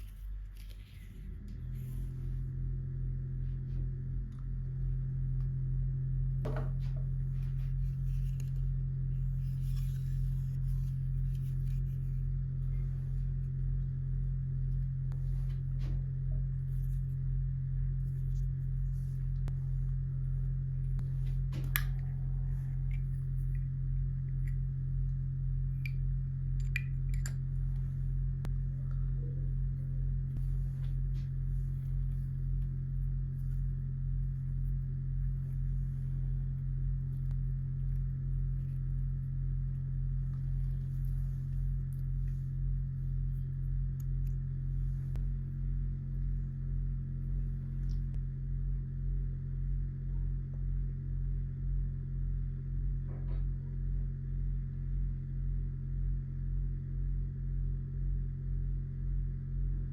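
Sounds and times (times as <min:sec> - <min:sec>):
steady low hum: 0:00.0 - 0:59.9.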